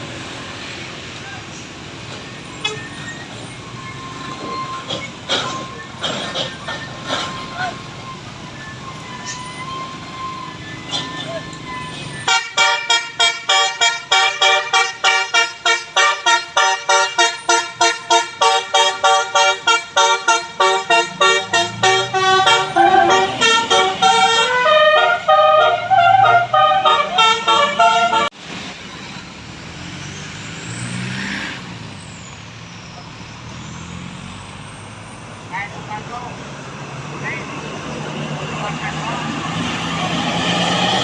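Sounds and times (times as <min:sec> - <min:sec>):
road and engine noise: 0:00.0 - 0:41.0
musical air horn playing tune: 0:12.2 - 0:28.3.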